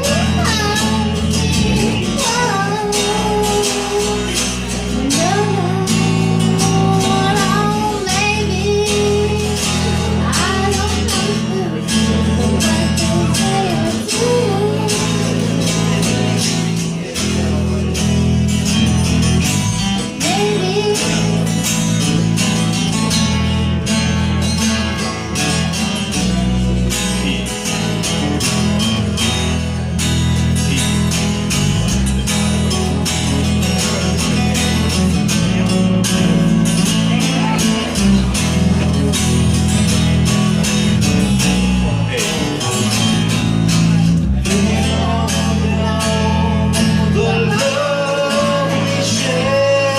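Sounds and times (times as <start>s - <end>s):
bass notes: 0.0s - 49.9s
country guitar: 0.0s - 49.9s.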